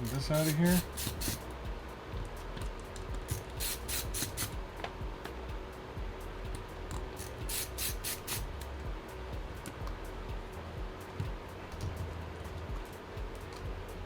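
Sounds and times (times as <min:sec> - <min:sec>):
small parts scraping: 0:00.0 - 0:01.4
steady low hum: 0:00.0 - 0:14.0.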